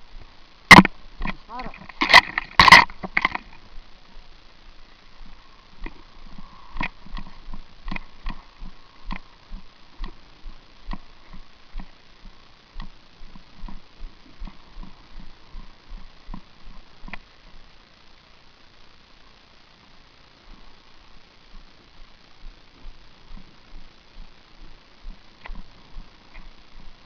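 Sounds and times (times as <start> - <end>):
light clicks and soft knocks: 24.2 - 27.0.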